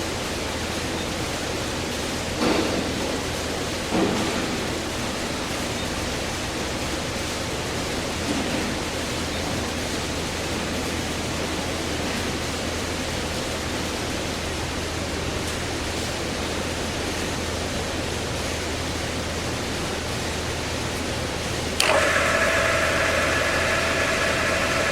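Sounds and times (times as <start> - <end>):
low machine hum: 0.0 - 24.9
machine hiss: 21.8 - 24.9.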